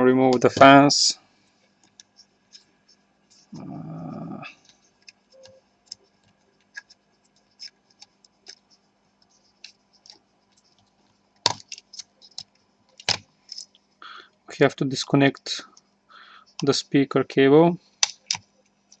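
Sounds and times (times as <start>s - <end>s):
small parts clicking: 11.4s - 13.8s.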